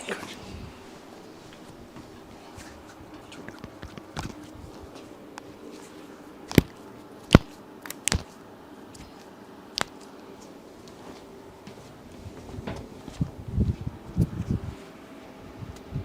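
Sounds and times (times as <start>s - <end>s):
spinal joints cracking: 2.7s - 4.8s, 6.5s - 8.3s.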